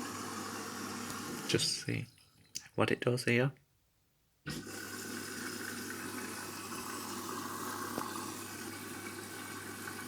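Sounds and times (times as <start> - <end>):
water rushing into washing machine: 0.0 - 1.8, 4.5 - 10.0.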